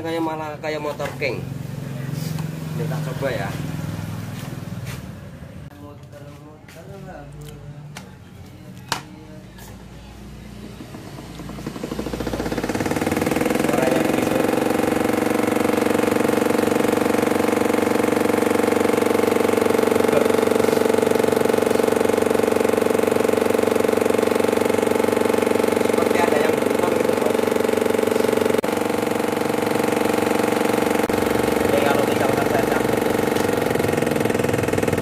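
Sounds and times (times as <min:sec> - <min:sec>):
washing machine running loudly: 0:10.1 - 0:35.0.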